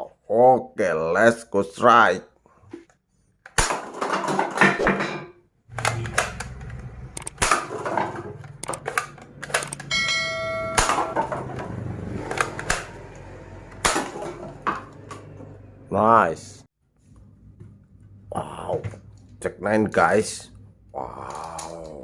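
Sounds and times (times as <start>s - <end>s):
toy gun clicks and clatter: 5.8s - 7.7s, 8.4s - 9.9s
brief ringing tone: 9.8s - 11.0s.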